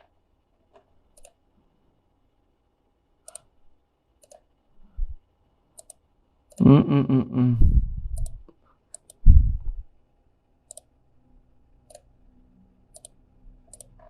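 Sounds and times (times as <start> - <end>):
computer mouse clicks: 0.7 - 1.4, 3.2 - 3.5, 4.2 - 4.5, 5.7 - 6.6, 8.2 - 9.2, 10.7 - 10.9, 11.8 - 12.1, 12.9 - 14.0.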